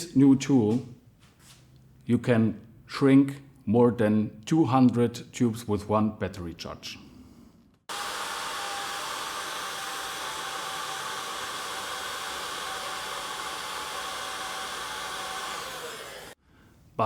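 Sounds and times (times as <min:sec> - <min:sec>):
hot air gun blowing: 0:07.9 - 0:16.4.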